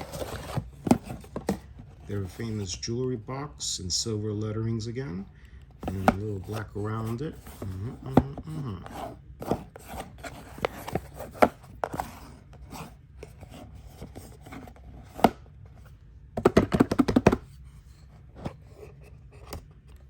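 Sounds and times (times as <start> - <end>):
packaging taps and clicks: 16.4 - 17.4.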